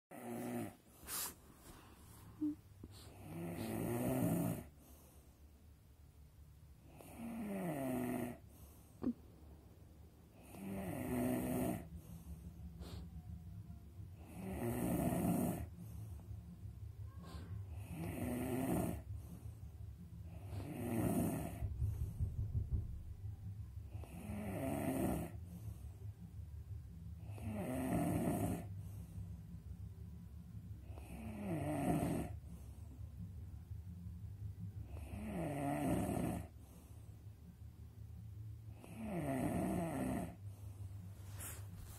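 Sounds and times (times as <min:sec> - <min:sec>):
person snoring: 0:00.1 - 0:00.8, 0:02.4 - 0:04.7, 0:06.9 - 0:08.4, 0:10.4 - 0:12.0, 0:14.2 - 0:15.7, 0:17.7 - 0:19.1, 0:20.3 - 0:21.7, 0:23.9 - 0:25.4, 0:27.2 - 0:28.7, 0:30.8 - 0:32.4, 0:34.9 - 0:36.6, 0:38.8 - 0:40.4
low breathing: 0:11.8 - 0:13.4, 0:19.0 - 0:24.3, 0:36.5 - 0:37.6, 0:40.4 - 0:41.9.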